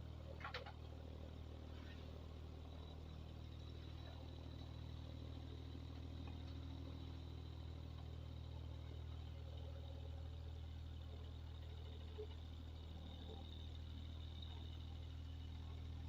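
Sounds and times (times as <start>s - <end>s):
blower motor humming: 0.0s - 16.0s.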